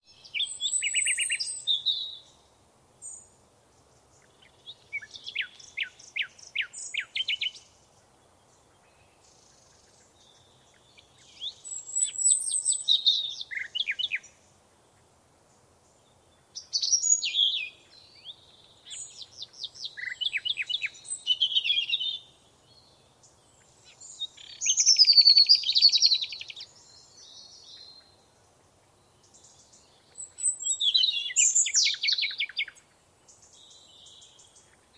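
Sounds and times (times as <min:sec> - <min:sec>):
songbird trilling: 0:00.2 - 0:02.3, 0:04.2 - 0:07.7, 0:08.8 - 0:14.3, 0:16.6 - 0:22.3, 0:23.6 - 0:28.1, 0:29.2 - 0:34.8.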